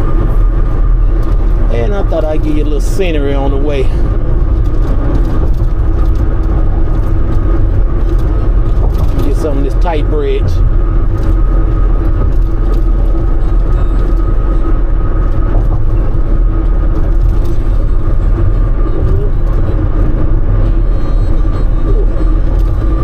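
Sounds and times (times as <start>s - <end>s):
engine and tyres rumbling: 0.0s - 23.0s.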